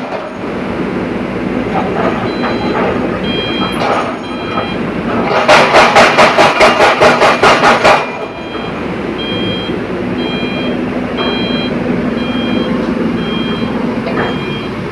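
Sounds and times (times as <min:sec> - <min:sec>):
drilling rig engine running: 0:00.0 - 0:14.9
warning beeper: 0:02.2 - 0:04.9, 0:08.3 - 0:14.8
rapid loud knocking: 0:03.5 - 0:08.5.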